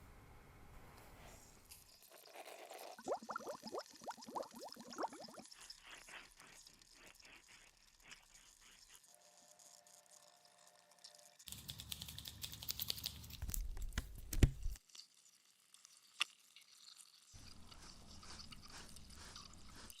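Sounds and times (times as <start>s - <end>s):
fingers scratching scalp and hair: 11.5s - 14.8s, 17.4s - 20.0s.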